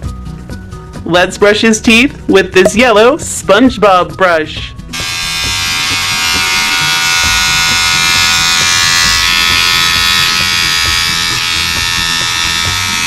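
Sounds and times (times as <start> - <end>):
electric toothbrush buzzing: 4.9 - 13.0.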